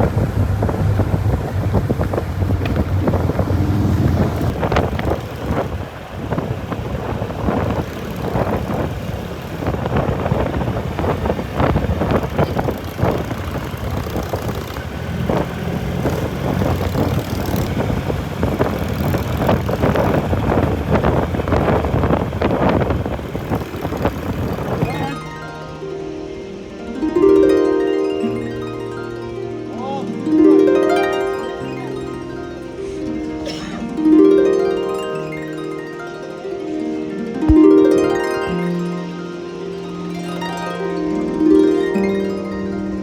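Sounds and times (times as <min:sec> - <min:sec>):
motorcycle engine running: 0:00.0 - 0:24.9
wind buffeting microphone: 0:00.0 - 0:27.5.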